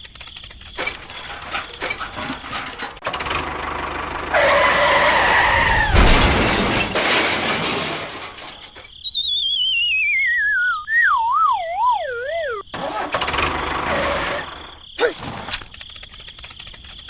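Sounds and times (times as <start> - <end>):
noisy crash: 5.6 - 8.8
falling wavering whistle tone: 9.0 - 12.7.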